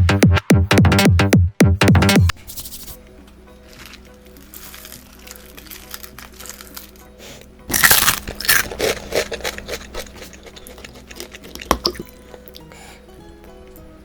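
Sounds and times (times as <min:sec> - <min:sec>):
background music: 0:00.0 - 0:14.0
chewing crunches: 0:03.8 - 0:07.0, 0:07.7 - 0:12.7
crunching bites of fried chicken: 0:03.8 - 0:07.1, 0:07.7 - 0:12.7.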